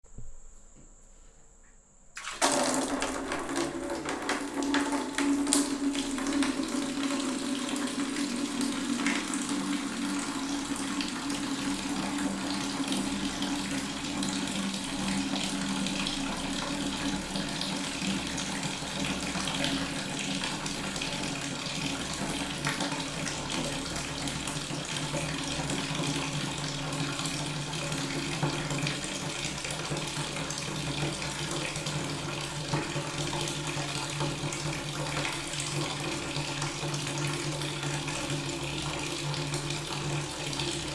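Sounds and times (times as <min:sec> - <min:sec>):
water tap running: 0:02.2 - 0:40.9.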